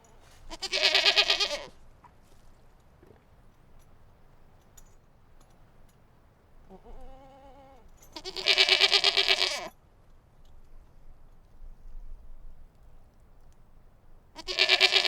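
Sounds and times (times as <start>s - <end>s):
sheep bleating: 0.2s - 1.7s, 6.7s - 9.7s, 14.4s - 15.0s.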